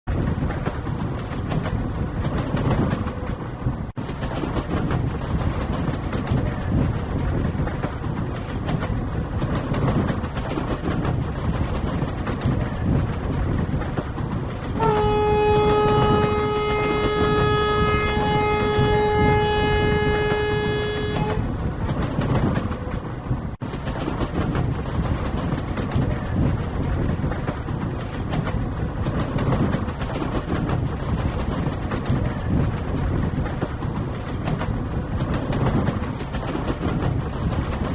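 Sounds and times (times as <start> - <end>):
train rumbling: 0.0 - 37.9
train horn blast: 14.8 - 21.5.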